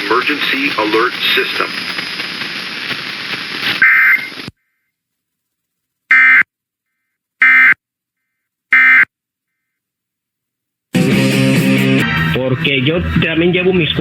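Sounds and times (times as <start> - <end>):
hissy radio static: 0.0 - 4.6, 12.2 - 14.0.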